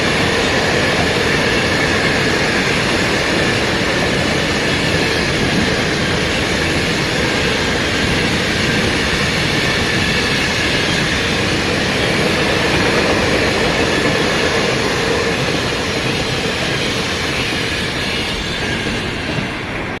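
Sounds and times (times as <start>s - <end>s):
train wheels rumbling on rails: 0.0s - 20.0s.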